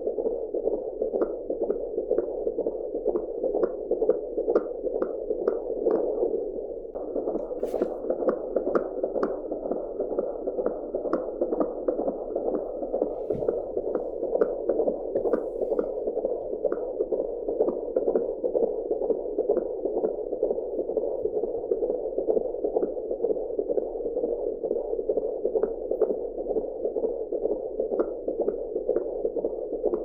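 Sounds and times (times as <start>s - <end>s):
whooshing heartbeat pulses: 7.0s - 21.1s.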